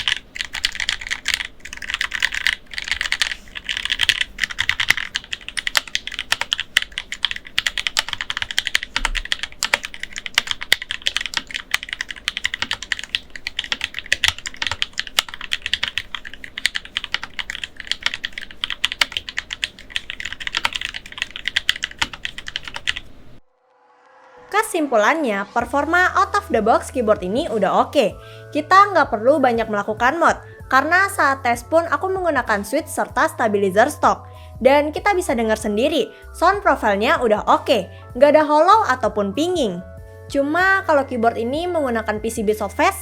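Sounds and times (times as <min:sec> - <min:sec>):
mechanical keyboard typing: 0:00.0 - 0:23.1.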